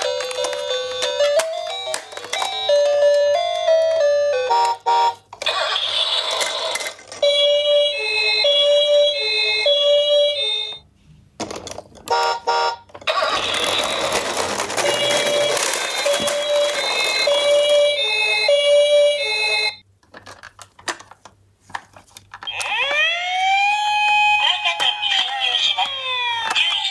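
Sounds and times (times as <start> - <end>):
two-tone toy siren: 0.0 - 10.8, 12.1 - 19.8, 22.4 - 26.9.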